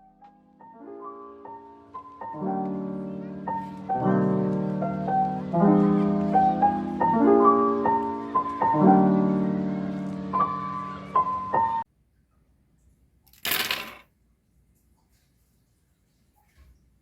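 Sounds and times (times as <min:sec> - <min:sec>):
lofi piano music: 0:00.0 - 0:11.9.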